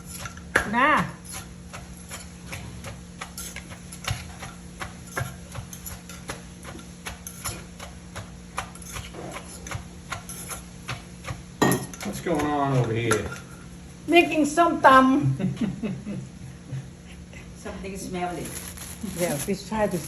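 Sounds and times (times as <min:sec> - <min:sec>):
pestle pounding in a mortar: 0:00.0 - 0:13.3.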